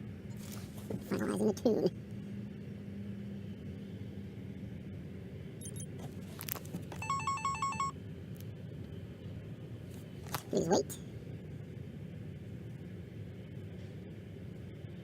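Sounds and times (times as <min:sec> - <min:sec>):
steady low hum: 0:00.0 - 0:15.0
electronic chime beeps: 0:05.6 - 0:05.9, 0:06.9 - 0:07.9.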